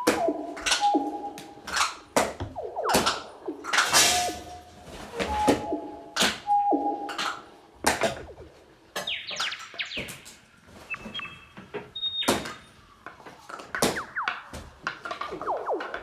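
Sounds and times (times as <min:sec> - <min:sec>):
falling pitch tones: 0:00.0 - 0:10.1, 0:15.2 - 0:16.0.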